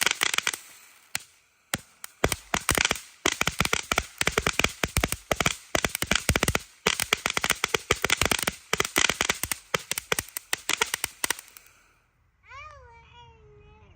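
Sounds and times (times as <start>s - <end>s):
firework fountain crackling: 0.0s - 11.8s.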